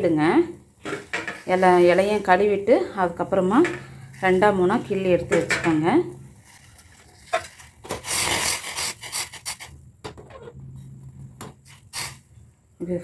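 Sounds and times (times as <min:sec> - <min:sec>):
rustling scraping: 0:06.3 - 0:09.7.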